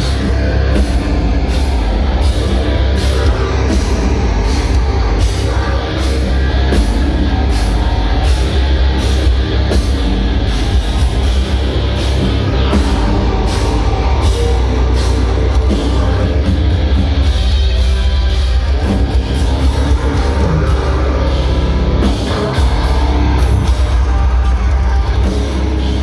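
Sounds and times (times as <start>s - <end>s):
heavy metal band playing: 0.0s - 26.0s.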